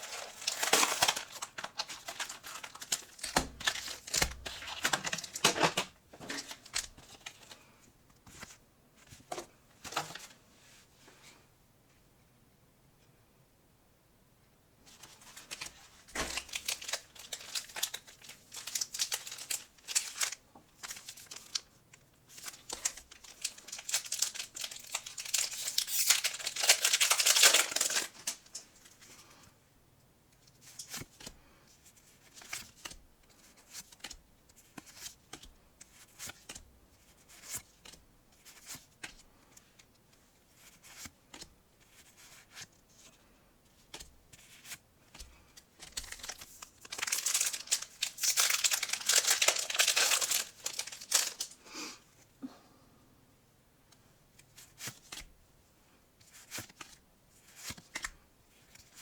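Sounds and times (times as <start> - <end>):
plastic wrapper crinkling and tearing: 0.0 - 7.6, 15.0 - 21.7, 22.3 - 28.8, 45.8 - 51.6.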